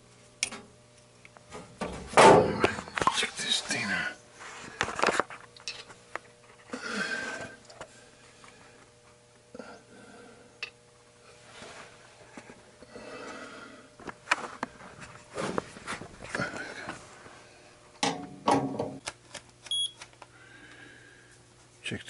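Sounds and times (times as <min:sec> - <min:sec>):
faint steady hum: 0:00.0 - 0:22.0
rustling and scraping: 0:04.4 - 0:06.7, 0:11.3 - 0:12.6, 0:14.0 - 0:17.4.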